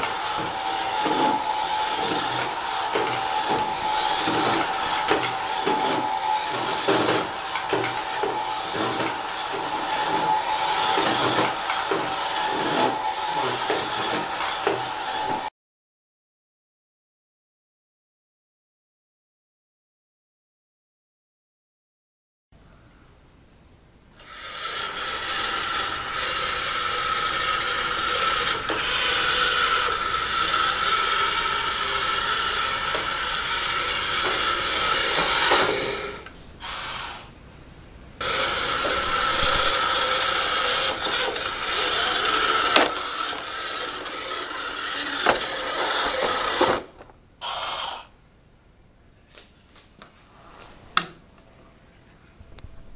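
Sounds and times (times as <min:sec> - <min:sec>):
robot vacuum cleaner running: 0:00.0 - 0:15.5, 0:24.2 - 0:37.3, 0:38.2 - 0:48.1.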